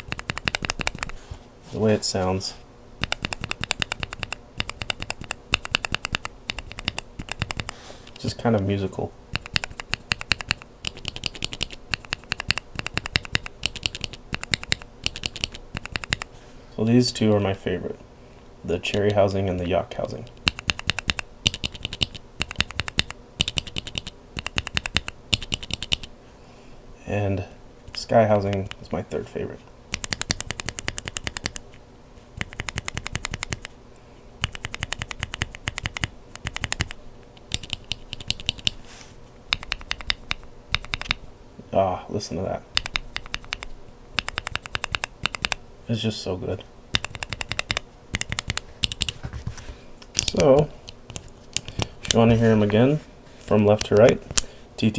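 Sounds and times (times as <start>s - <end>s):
mechanical keyboard clacks: 0.0s - 1.2s, 3.0s - 7.8s, 9.3s - 16.3s, 20.2s - 26.1s, 27.9s - 28.8s, 29.9s - 31.6s, 32.4s - 33.7s, 34.4s - 38.8s, 39.5s - 41.3s, 42.7s - 45.6s, 46.9s - 49.2s.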